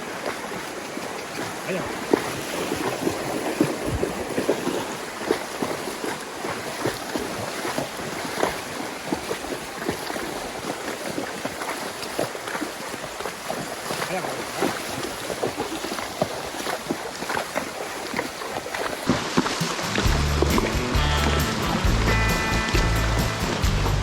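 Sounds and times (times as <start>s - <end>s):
hooves on rocky trail: 0.0s - 24.0s
wind on microphone: 2.2s - 4.6s.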